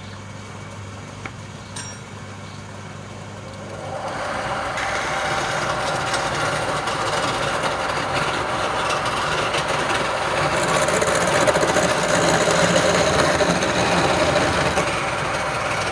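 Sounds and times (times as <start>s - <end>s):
wood lathe grinding: 3.5s - 15.9s.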